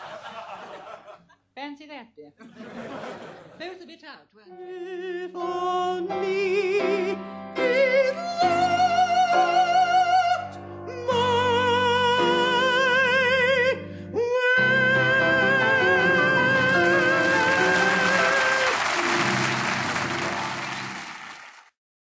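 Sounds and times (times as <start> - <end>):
operatic soprano singing: 4.5 - 19.4.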